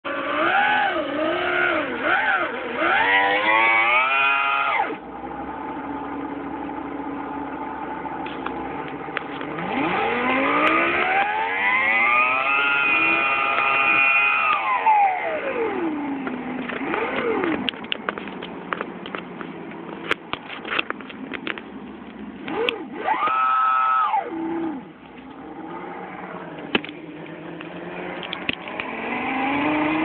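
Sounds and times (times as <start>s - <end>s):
synthetic engine sound revving: 0.1s - 6.1s, 9.4s - 17.7s, 22.4s - 30.0s
car engine running: 0.1s - 30.0s.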